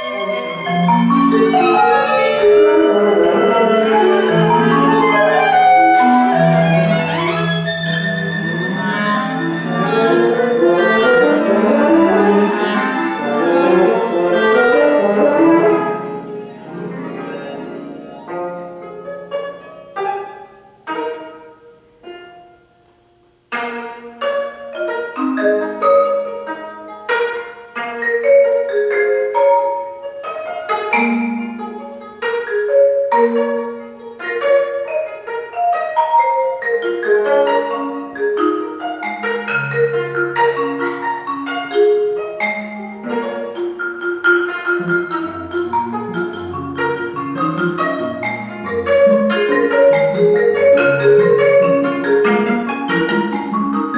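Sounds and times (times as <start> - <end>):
chamber ensemble playing: 0.0 - 22.4, 23.6 - 53.9
short ringing plucked notes: 0.0 - 22.6.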